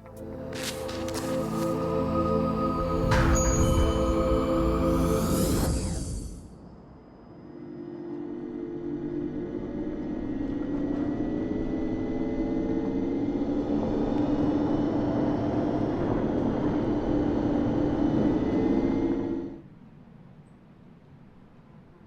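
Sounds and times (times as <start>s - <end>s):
tyre and road noise: 0.0s - 2.2s
synthesized electric car hum: 0.0s - 19.6s.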